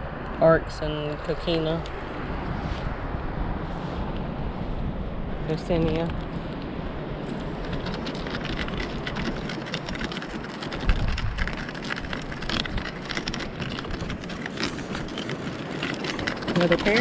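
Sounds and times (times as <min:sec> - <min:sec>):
steady rushing noise: 0:00.0 - 0:17.0
shells crunching underfoot: 0:07.2 - 0:17.0.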